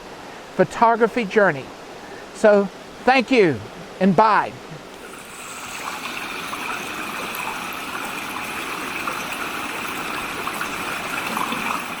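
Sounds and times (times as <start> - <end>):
flowing water: 4.7 - 12.0.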